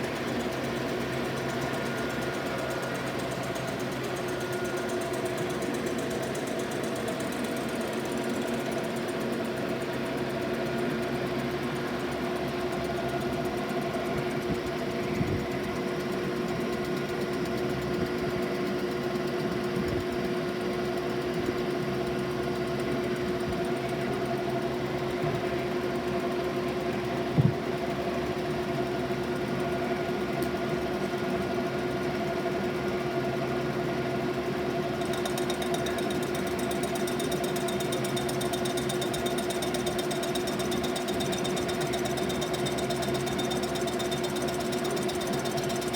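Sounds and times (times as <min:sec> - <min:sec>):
machine tool humming: 0:34.9 - 0:45.9.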